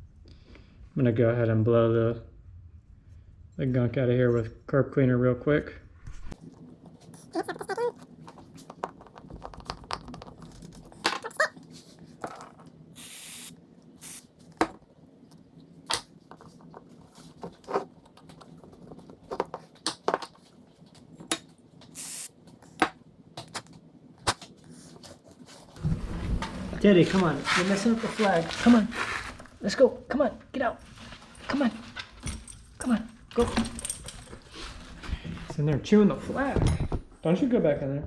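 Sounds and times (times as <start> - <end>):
aerosol spray hissing: 13.0 - 14.3, 22.0 - 22.3.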